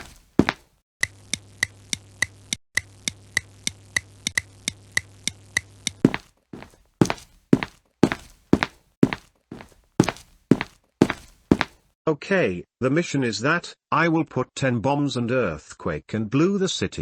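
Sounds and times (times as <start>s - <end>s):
cartoon footsteps: 0.0s - 0.6s, 6.1s - 11.8s.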